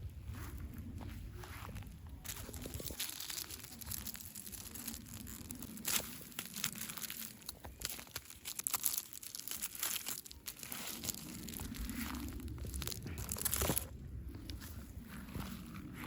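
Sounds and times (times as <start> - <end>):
packaging crinkling and tearing: 2.2 - 13.9.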